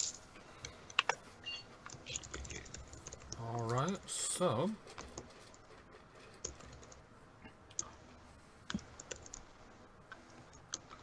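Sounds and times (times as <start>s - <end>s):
keyboard and mouse clicks: 1.8s - 4.0s, 6.4s - 7.0s, 8.7s - 9.5s, 10.1s - 11.0s.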